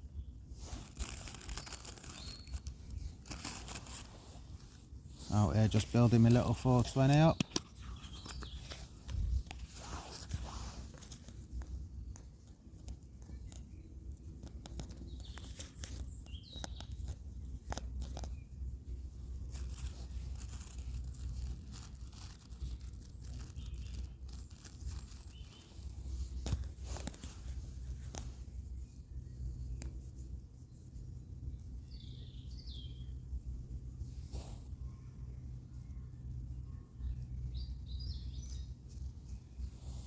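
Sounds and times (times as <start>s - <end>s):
rolling paper rustling and tearing: 0.5s - 12.3s, 19.4s - 28.4s
small handling clicks: 5.8s - 18.4s
steady low rumble: 25.7s - 40.0s.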